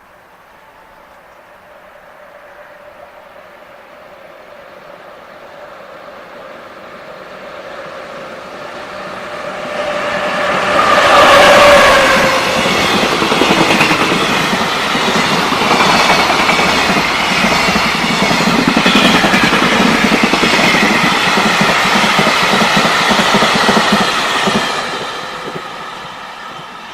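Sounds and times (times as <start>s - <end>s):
train wagons rumbling: 9.7s - 26.9s.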